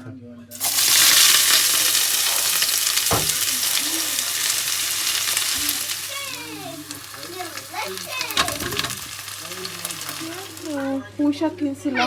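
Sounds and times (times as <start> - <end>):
food sizzling in hot oil: 0.5 - 11.2
utensil knock: 1.5 - 4.6.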